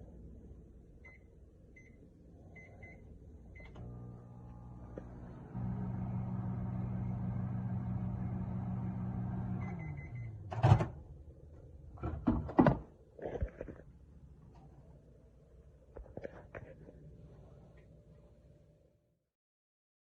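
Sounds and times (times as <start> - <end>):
microwave oven humming: 3.6 - 11.2.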